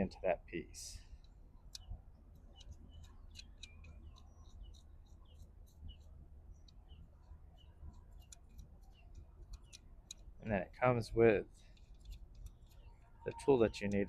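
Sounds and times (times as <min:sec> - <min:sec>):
small clicks of screw threading: 0:01.2 - 0:07.0, 0:07.6 - 0:10.4, 0:11.5 - 0:14.0.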